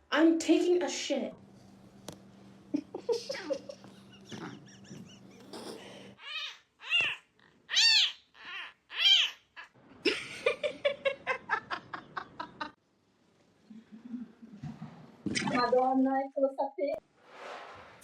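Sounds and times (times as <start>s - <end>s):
cat meowing: 6.2s - 9.8s.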